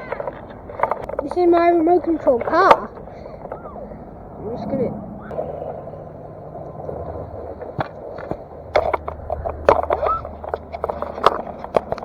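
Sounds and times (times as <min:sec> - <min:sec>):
low outdoor rumble: 0:00.0 - 0:12.0
hard objects scraping on gravel: 0:07.8 - 0:12.0.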